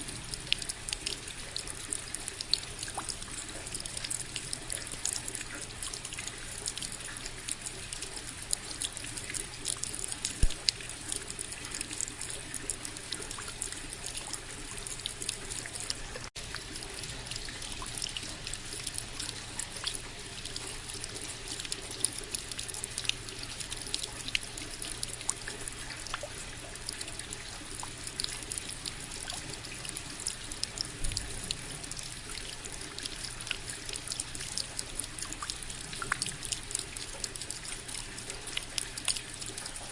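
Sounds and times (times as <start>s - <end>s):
sharp tap: 10.4s - 10.6s.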